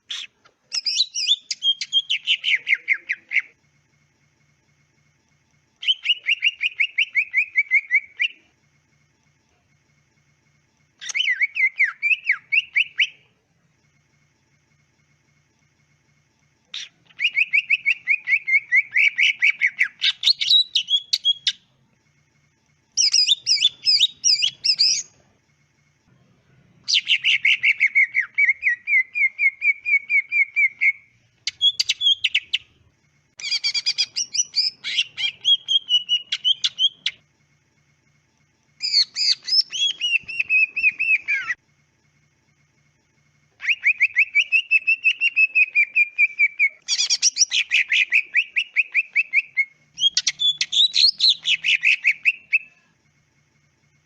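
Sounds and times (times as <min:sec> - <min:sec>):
bird singing rapid chirping: 0:00.0 - 0:03.6, 0:05.8 - 0:08.4, 0:11.0 - 0:13.3, 0:16.7 - 0:21.7, 0:22.9 - 0:25.2, 0:26.8 - 0:32.8, 0:33.4 - 0:37.2, 0:38.8 - 0:41.6, 0:43.6 - 0:52.8.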